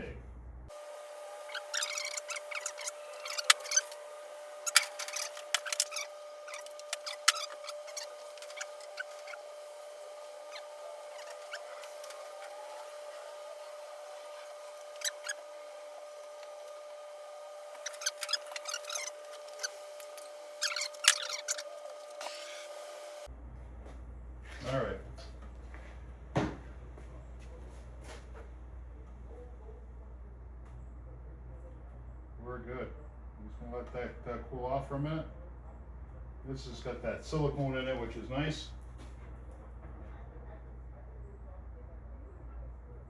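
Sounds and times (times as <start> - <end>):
wire and tubing clicks and rustles: 4.6 - 9.4.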